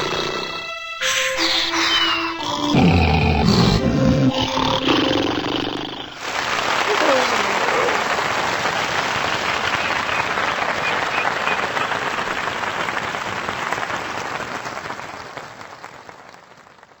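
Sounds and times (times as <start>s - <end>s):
crowd applauding: 6.1s - 17.0s.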